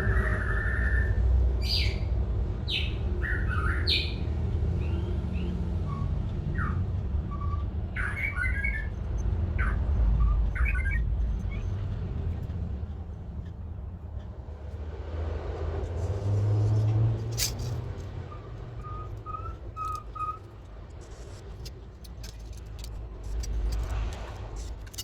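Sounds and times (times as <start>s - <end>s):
birds squawking and chirping: 17.4s - 20.5s.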